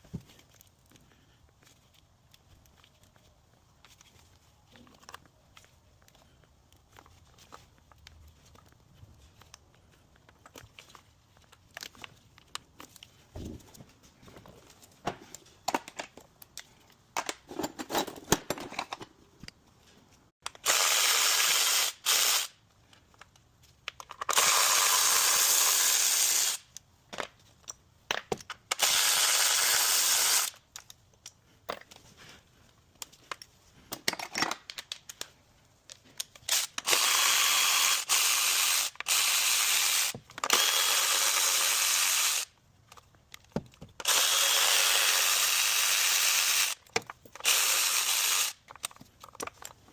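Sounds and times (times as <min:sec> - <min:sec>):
hand tool clicks and clatter: 0:20.4 - 0:32.1, 0:32.9 - 0:49.9.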